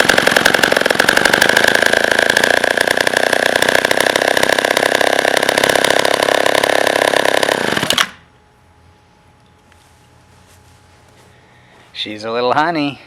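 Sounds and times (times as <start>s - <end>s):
chainsaw engine running: 0.0s - 8.3s.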